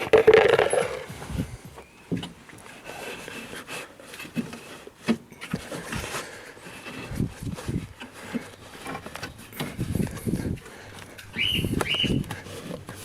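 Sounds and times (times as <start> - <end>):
hands and tools handling car parts: 0.0 - 5.9.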